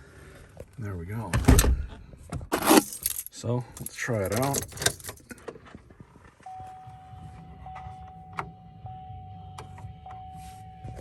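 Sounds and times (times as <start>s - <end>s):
dashboard warning chime: 6.4s - 11.0s.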